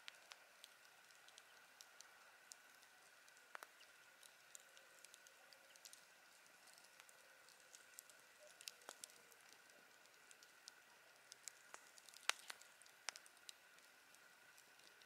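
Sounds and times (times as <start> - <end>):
campfire crackling: 0.0 - 15.0.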